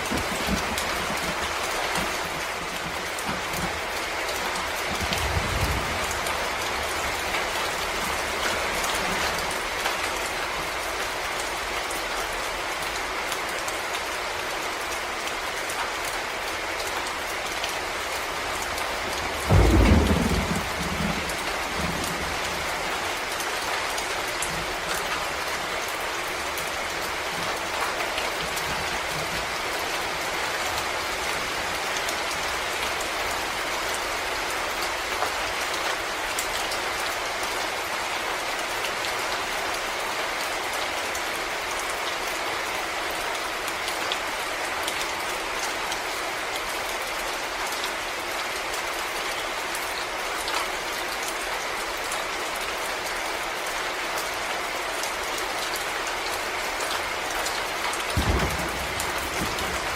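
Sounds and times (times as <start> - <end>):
low rumble of thunder: 0.0 - 3.8, 4.6 - 9.8, 19.0 - 23.4, 58.2 - 59.9
rain falling on leaves: 0.0 - 59.9.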